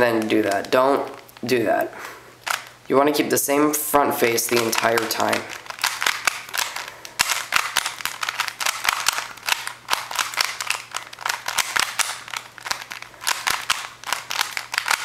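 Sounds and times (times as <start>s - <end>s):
plastic puzzle cube clicking: 0.1s - 1.4s, 4.4s - 15.0s.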